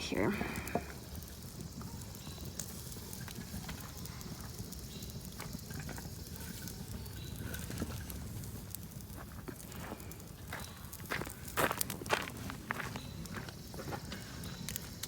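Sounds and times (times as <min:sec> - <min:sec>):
campfire wood crackling: 0:00.0 - 0:15.0.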